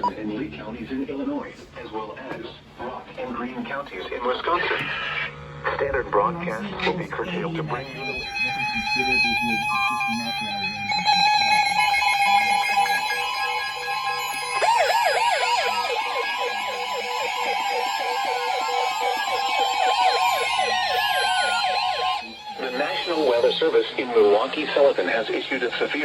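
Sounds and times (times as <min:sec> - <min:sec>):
steady warning alarm tone: 0:07.7 - 0:26.0
warbling siren-like alert alarm: 0:10.0 - 0:24.9.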